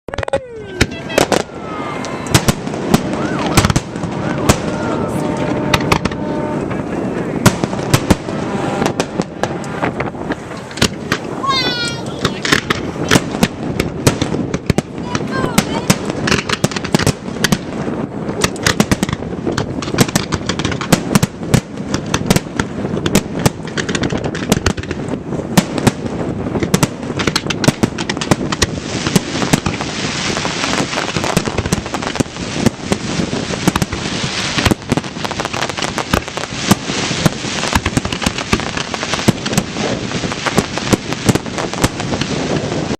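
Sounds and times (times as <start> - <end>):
fireworks bangs and crackles: 0.1 - 42.9.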